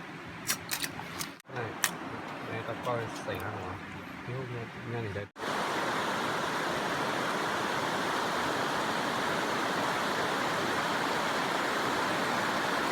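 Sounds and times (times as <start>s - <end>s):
stream water flowing: 5.4s - 12.9s.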